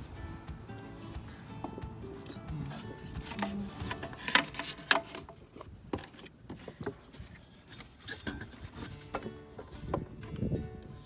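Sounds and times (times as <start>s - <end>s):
hand tools clinking on metal: 1.0s - 5.4s.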